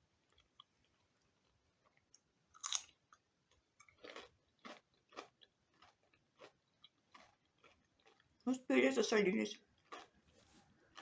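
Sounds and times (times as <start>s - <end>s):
person chewing: 0.2s - 11.0s
crunch of biting cucumber: 2.5s - 3.2s, 3.8s - 8.4s.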